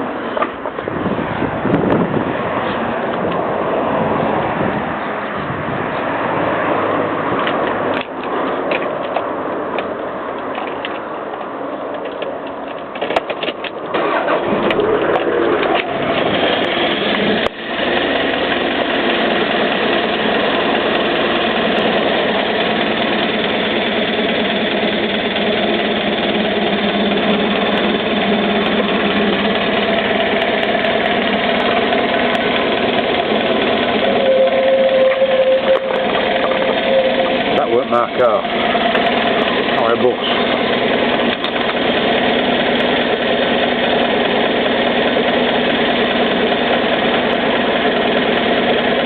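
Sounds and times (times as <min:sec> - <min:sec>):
car engine running roughly: 0:14.0 - 0:49.0.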